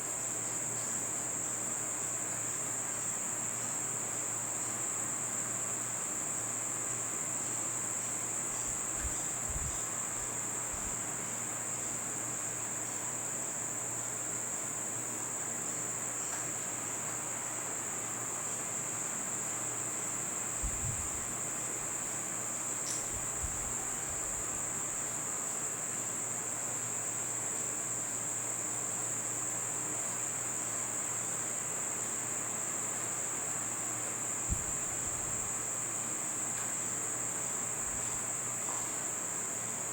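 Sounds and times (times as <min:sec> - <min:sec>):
crickets chirring: 0:00.0 - 0:39.9
faint low thumps: 0:34.5 - 0:35.6.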